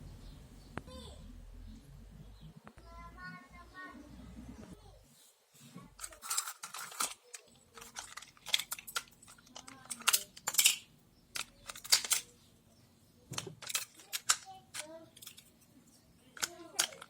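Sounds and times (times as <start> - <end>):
clicks of small hard objects: 6.0 - 12.3, 13.3 - 15.6, 16.4 - 17.0.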